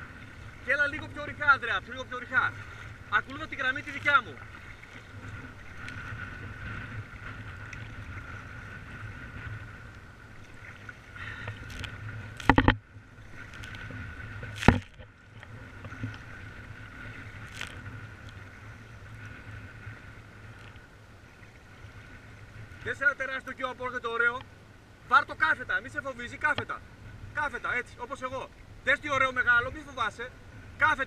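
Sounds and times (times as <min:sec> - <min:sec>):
wind and waves rushing: 0:00.0 - 0:31.0.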